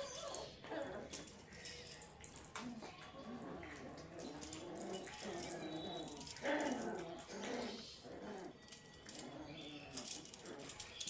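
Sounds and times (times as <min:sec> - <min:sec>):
pet whimpering: 0:00.0 - 0:01.4.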